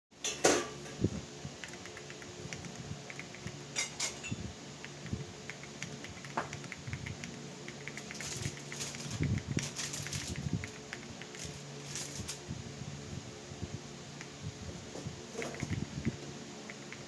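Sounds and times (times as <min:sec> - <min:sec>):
mechanical keyboard typing: 0:01.6 - 0:03.6, 0:04.8 - 0:12.4, 0:15.4 - 0:17.0.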